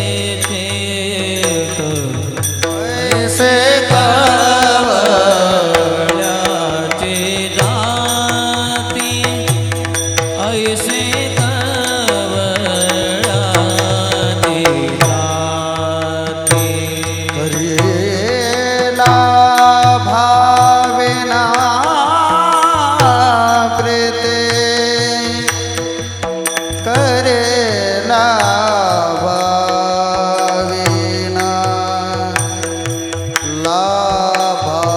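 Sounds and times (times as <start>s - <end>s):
man singing ornamented melody: 0.0s - 34.9s
sustained accompaniment: 0.0s - 34.9s
drum beat: 1.4s - 27.5s.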